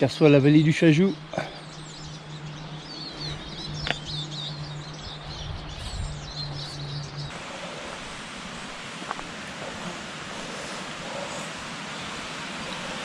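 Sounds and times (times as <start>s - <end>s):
outdoor hiss: 0.0s - 13.0s
songbirds chirping: 0.0s - 13.0s
low hum: 1.1s - 13.0s.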